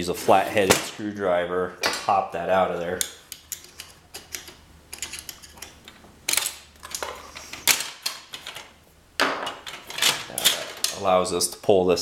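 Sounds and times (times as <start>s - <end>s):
screwdriver scraping metal: 3.0s - 5.8s
metal clicks and ticks: 3.0s - 7.2s.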